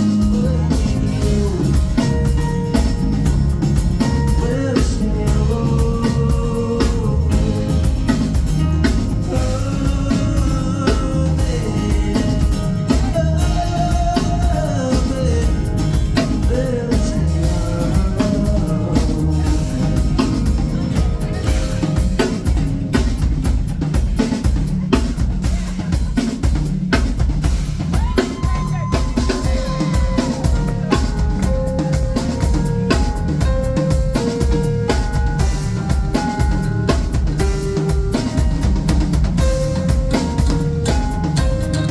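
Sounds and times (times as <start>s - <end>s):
person singing: 0.0s - 23.0s, 27.9s - 36.6s
live band playing: 0.0s - 41.9s.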